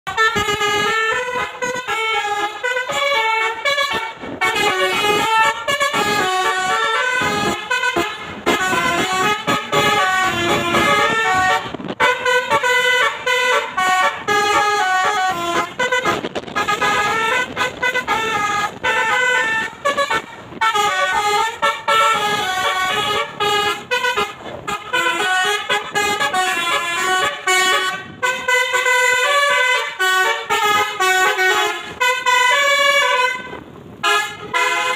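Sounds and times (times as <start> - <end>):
musical air horn playing a tune: 0.1 - 34.9.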